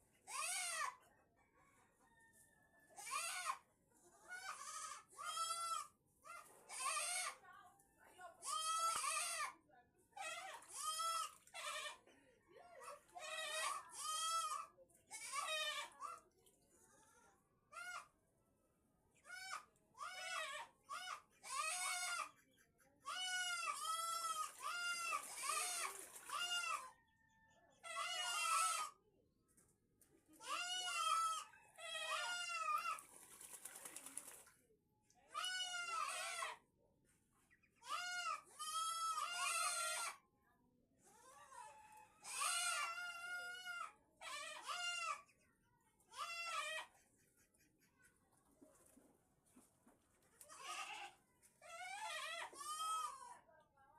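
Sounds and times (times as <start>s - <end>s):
farm animal wavering cries: 0.3s - 0.9s, 3.0s - 3.6s, 4.3s - 5.9s, 10.2s - 12.0s, 19.3s - 22.3s, 23.1s - 26.9s, 27.8s - 29.0s, 30.4s - 33.0s, 35.4s - 36.6s, 37.8s - 40.2s, 42.2s - 45.2s, 46.1s - 47.0s, 50.5s - 53.2s
rustling or splashing: 24.4s - 26.6s, 32.9s - 34.6s
farm animal calling: 27.7s - 29.0s.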